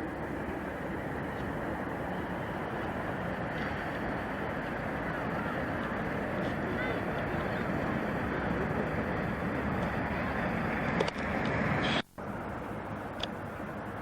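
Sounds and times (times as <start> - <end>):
train rushing rumble: 0.0 - 14.0.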